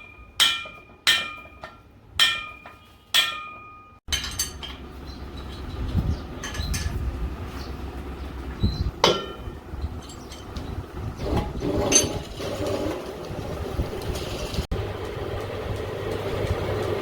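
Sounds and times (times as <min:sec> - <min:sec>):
metal parts clinking: 0:00.0 - 0:07.0, 0:09.1 - 0:10.7
low machine rumble: 0:04.3 - 0:17.0.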